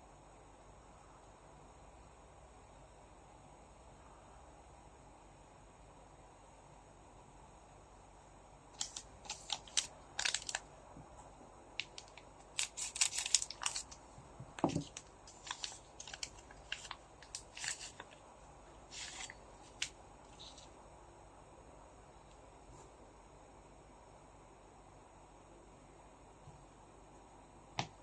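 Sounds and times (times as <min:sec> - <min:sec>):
foil pack crinkling and tearing: 0:08.8 - 0:10.7, 0:11.8 - 0:14.0, 0:14.7 - 0:18.2, 0:18.9 - 0:20.6.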